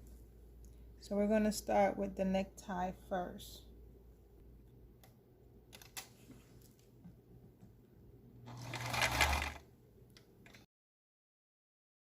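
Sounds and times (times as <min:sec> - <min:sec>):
sewing machine stitching: 0:08.5 - 0:09.6.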